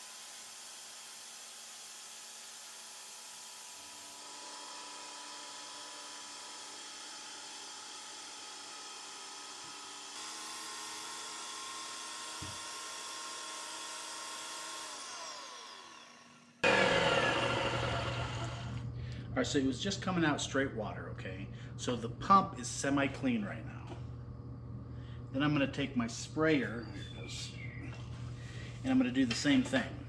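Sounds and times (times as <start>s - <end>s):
paint sprayer pump whining: 2.6s - 18.9s.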